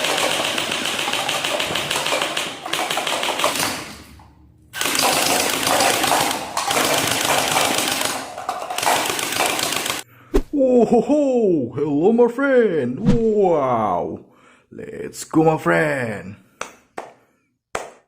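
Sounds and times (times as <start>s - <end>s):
toy gun rattling bursts: 0.0s - 4.0s, 4.8s - 10.0s.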